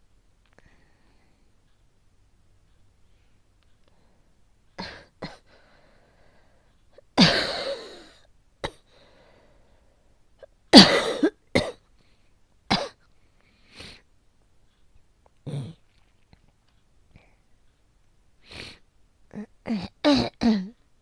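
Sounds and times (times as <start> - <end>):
woman coughing: 7.2 - 8.8, 10.8 - 11.8, 12.7 - 13.0, 19.7 - 20.8.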